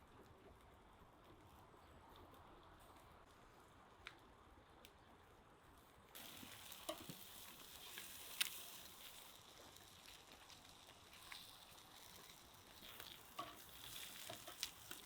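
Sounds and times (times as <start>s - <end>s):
fish sizzling on grill: 6.2s - 15.0s.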